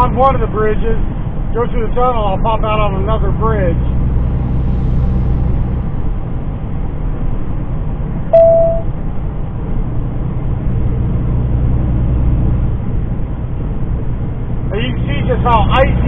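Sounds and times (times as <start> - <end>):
truck engine and road drone: 0.0 - 16.0
short mid-pitched beep: 8.3 - 8.9.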